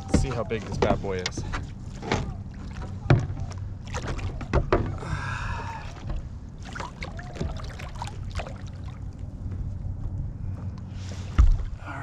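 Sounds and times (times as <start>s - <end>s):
knocks and clicks on plastic kayak: 0.0s - 5.0s.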